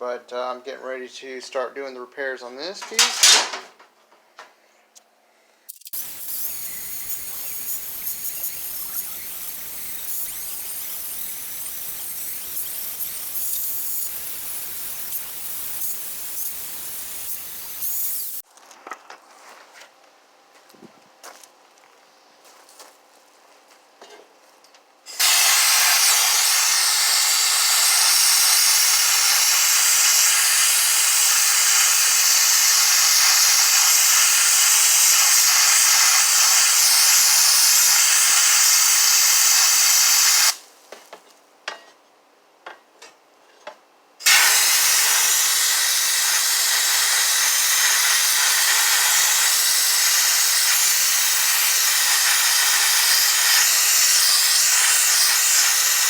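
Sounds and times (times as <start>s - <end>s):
sandblaster hissing: 5.7s - 18.5s, 25.1s - 40.6s, 44.2s - 56.0s.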